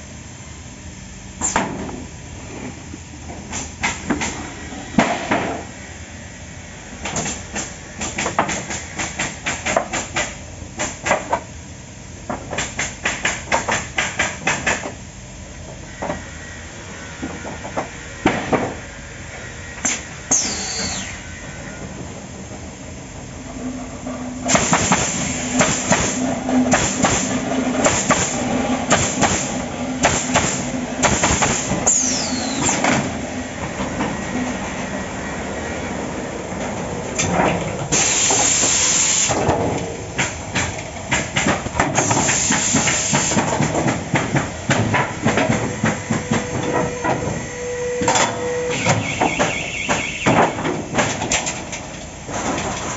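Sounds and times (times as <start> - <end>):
machine hum: 10.4 - 52.9
falling squeals: 19.4 - 22.0, 31.8 - 32.9, 45.7 - 50.6
nailing machine bangs: 24.5 - 32.8.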